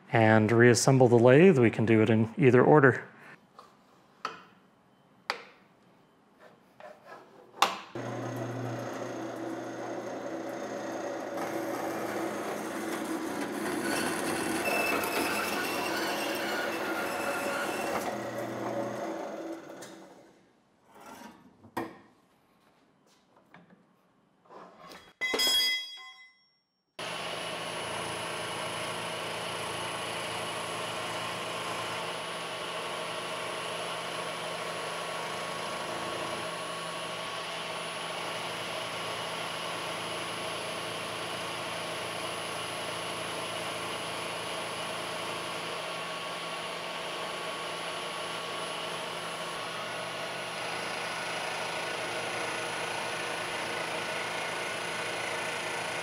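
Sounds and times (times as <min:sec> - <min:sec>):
machine tool motor humming: 0:08.0 - 0:20.1
ringing metal clink: 0:25.2 - 0:26.7.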